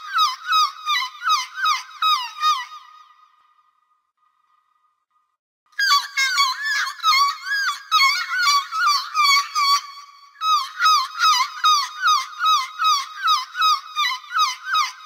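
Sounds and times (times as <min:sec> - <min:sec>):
gull calling: 0:05.8 - 0:15.0.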